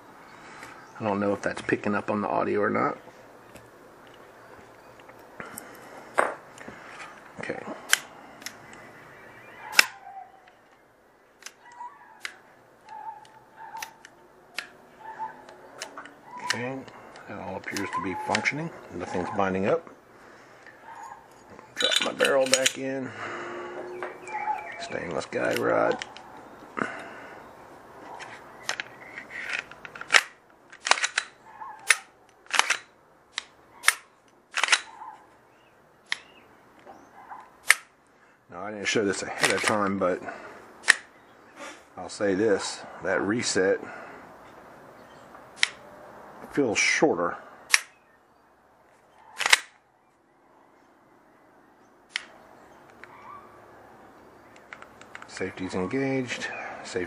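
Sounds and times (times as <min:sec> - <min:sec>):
birds chirping: 0:00.0 - 0:30.6, 0:31.3 - 0:57.0
pistol metallic clicks: 0:07.8 - 0:08.8, 0:09.7 - 0:14.8, 0:15.4 - 0:18.5, 0:28.2 - 0:35.0, 0:36.0 - 0:36.4, 0:37.6 - 0:38.0, 0:40.8 - 0:41.1, 0:45.5 - 0:45.9, 0:47.7 - 0:48.0, 0:49.4 - 0:49.8, 0:52.1 - 0:53.2, 0:54.5 - 0:55.5.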